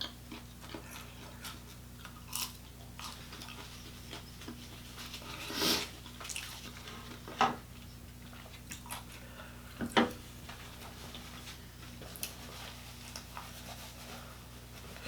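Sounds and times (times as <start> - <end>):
chewing with wet smacks: 0.0 - 4.8, 6.0 - 7.2, 7.8 - 9.2
low electrical hum: 0.0 - 15.0.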